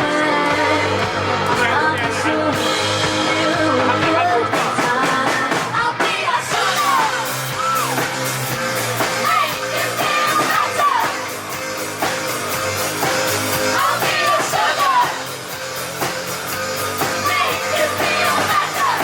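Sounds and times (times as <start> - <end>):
person singing: 0.0 - 8.0
drums: 0.0 - 19.0.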